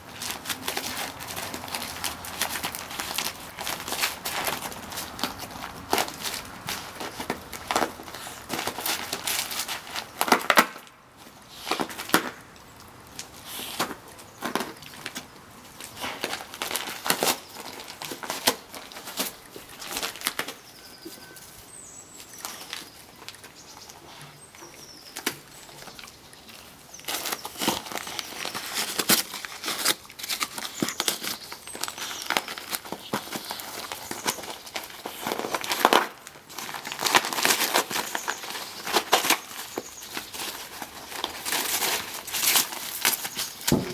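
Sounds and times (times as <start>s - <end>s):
dog tearing wrapping paper: 0.0s - 10.9s, 15.8s - 20.6s, 27.1s - 43.9s.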